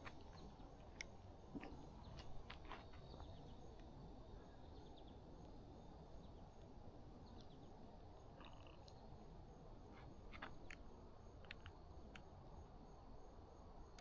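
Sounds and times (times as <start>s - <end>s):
steady low hiss: 0.0s - 14.0s
faint bird chirps: 7.2s - 9.3s.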